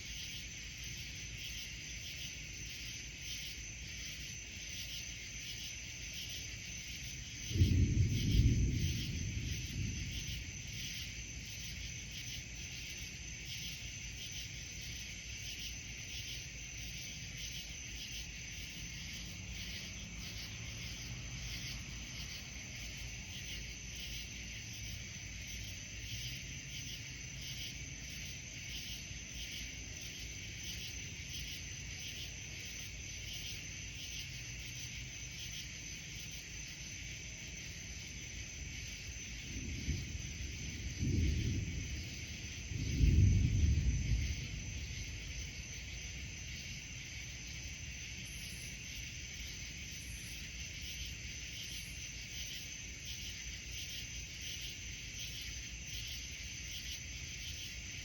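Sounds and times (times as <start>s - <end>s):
crickets chirping: 0.0s - 58.0s
thunder rumble: 7.0s - 13.1s, 38.8s - 48.2s.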